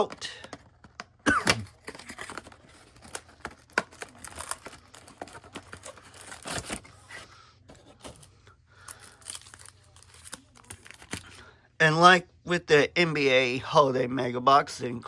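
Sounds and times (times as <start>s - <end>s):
packs rustling and crinkling: 0.0s - 11.4s.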